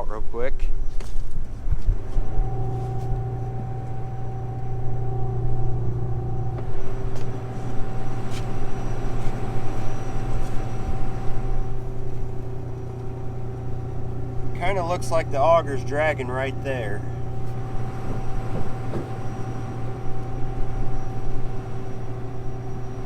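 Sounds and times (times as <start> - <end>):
combine humming: 1.3 - 23.0.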